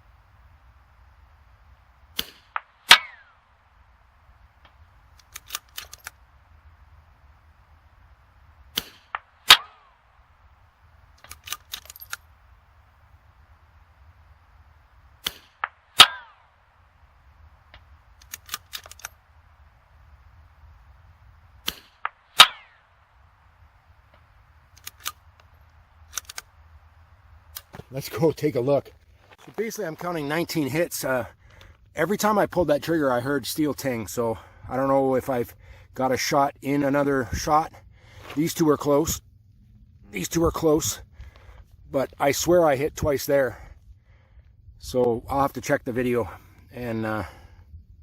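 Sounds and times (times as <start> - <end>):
rifle shots: 2.1 - 3.4, 8.7 - 10.0, 15.2 - 16.5, 21.6 - 22.8.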